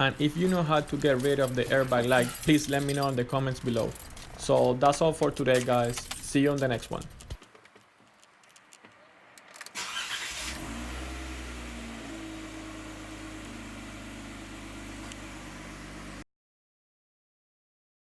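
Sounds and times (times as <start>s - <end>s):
engine starter cranking: 9.4s - 11.7s
car engine idling: 9.8s - 16.2s.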